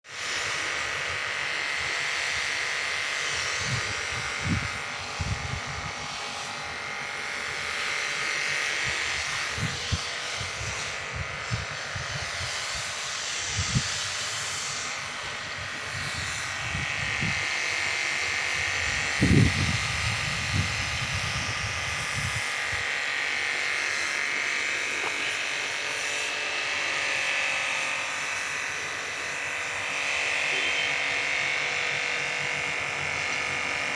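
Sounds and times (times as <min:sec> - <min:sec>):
pressure washer jet hissing: 0:00.1 - 0:33.9.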